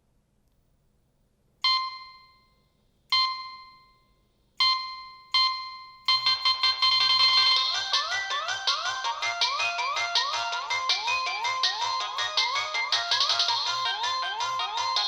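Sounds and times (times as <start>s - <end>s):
phone ringtone: 4.7s - 15.0s.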